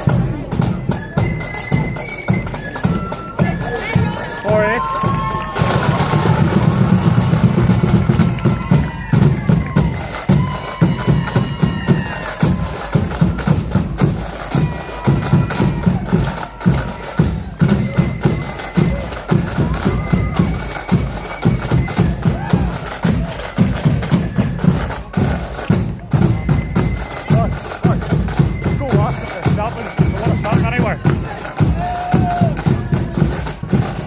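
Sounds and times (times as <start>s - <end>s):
flutes playing a tune: 0.0s - 34.0s
steady drum beat: 0.0s - 34.0s.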